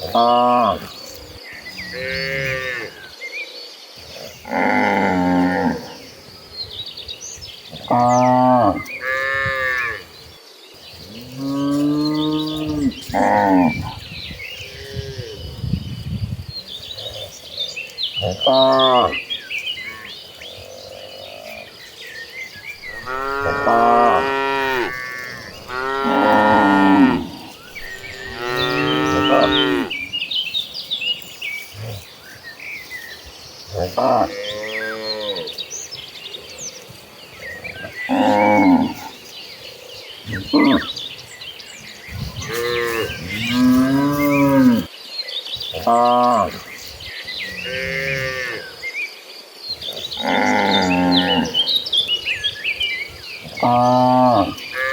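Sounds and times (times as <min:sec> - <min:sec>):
birds chirping: 0:00.0 - 0:54.9
insect high drone: 0:18.6 - 0:54.9
cattle mooing: 0:22.8 - 0:30.1.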